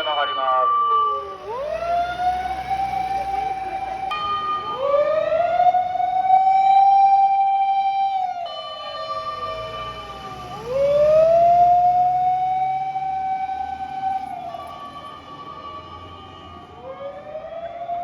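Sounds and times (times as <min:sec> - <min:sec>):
truck engine rumbling: 0:00.0 - 0:06.6
fire engine siren wailing: 0:00.0 - 0:18.0
steady siren tone: 0:00.0 - 0:18.0.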